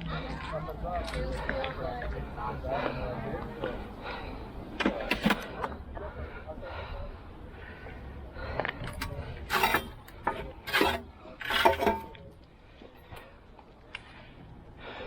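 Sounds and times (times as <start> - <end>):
metal scrap clinking and scraping: 8.9 - 12.3.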